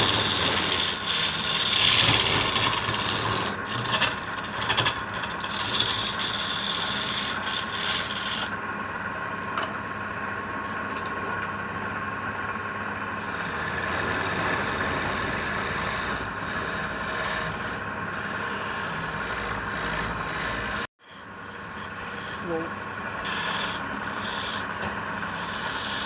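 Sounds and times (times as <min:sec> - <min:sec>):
small power tool abrading wood: 0:00.0 - 0:08.5, 0:23.2 - 0:24.6.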